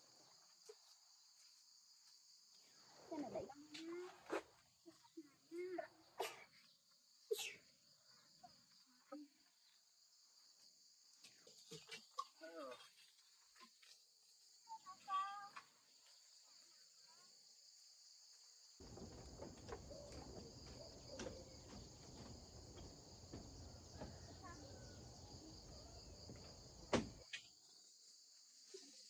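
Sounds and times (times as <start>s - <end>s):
insects chirring: 0.0s - 29.0s.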